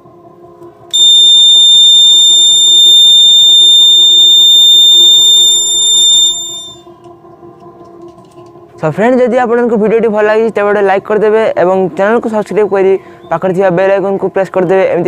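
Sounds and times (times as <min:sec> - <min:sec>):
door alarm buzzer tone: 0:00.9 - 0:06.9.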